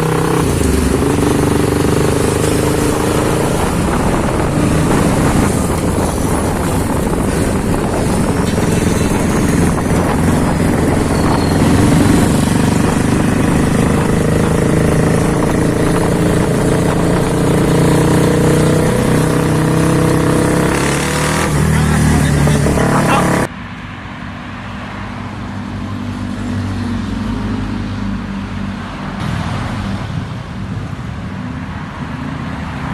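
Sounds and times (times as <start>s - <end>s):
motorcycle engine running: 0.0s - 23.5s.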